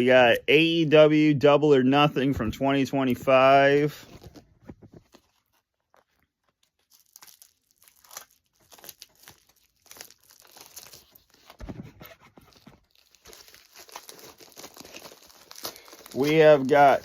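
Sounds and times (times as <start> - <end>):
package wrapping tearing and rustling: 4.0 - 17.0.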